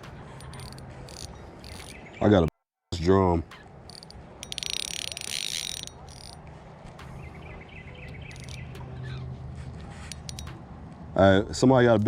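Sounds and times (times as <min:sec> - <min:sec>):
fishing reel buzzing clicks: 0:00.2 - 0:02.0, 0:03.9 - 0:06.4, 0:08.3 - 0:08.8
insects chirping: 0:07.0 - 0:08.8.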